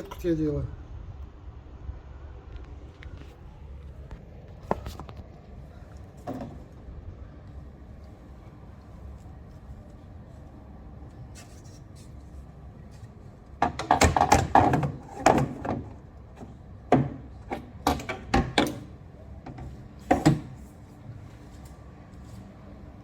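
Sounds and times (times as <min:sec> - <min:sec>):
knocks and rattles on screen frame: 0:13.6 - 0:18.9.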